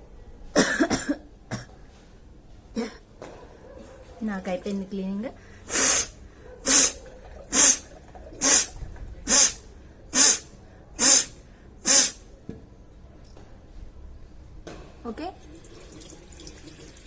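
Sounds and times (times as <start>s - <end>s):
person blowing through nose: 5.7s - 9.6s, 10.2s - 11.3s, 11.9s - 12.2s.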